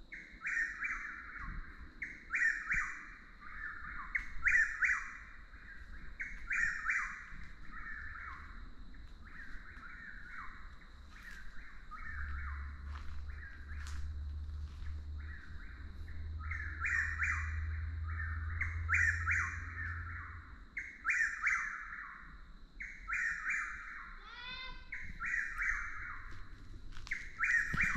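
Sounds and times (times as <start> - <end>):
nightjar singing repeated phrase: 22.8 - 26.2.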